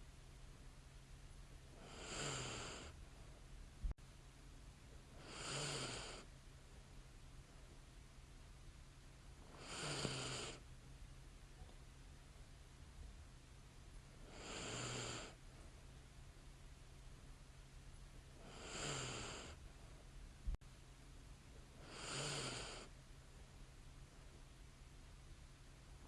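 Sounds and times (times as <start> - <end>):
woman snoring lightly: 1.7 - 3.0, 5.2 - 6.3, 9.5 - 10.6, 14.2 - 15.4, 18.4 - 19.6, 21.8 - 22.9.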